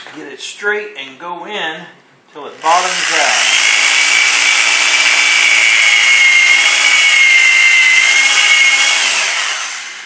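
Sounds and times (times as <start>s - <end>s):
electric drill whining: 2.6s - 10.0s.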